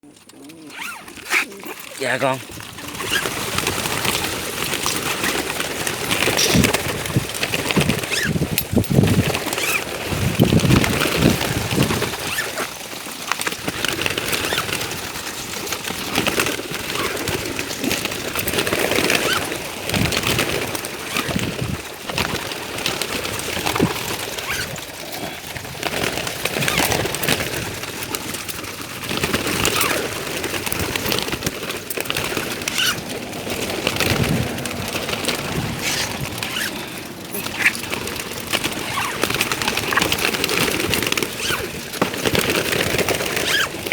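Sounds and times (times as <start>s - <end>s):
pigeons cooing: 0.0s - 8.4s, 32.2s - 41.9s
clatter of wings: 0.0s - 43.9s.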